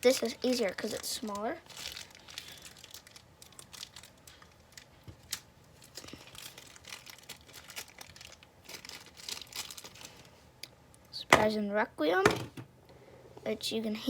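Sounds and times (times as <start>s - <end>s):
plastic packaging crinkling: 0.0s - 10.7s.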